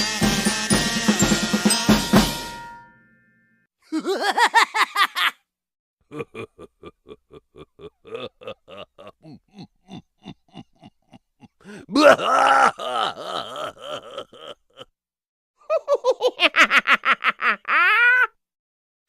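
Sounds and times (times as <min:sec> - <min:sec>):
pitched squeaks: 0:00.0 - 0:02.1
drum kit sting: 0:00.0 - 0:02.9.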